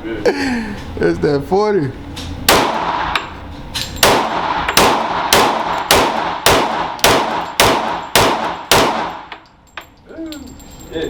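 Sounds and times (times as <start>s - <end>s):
pistol shots echoing indoors: 2.5s - 3.3s, 4.0s - 9.4s.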